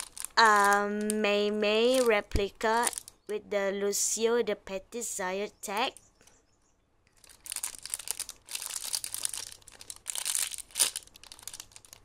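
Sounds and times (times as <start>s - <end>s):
packaging crinkling and rustling: 0.0s - 3.2s, 7.1s - 12.0s.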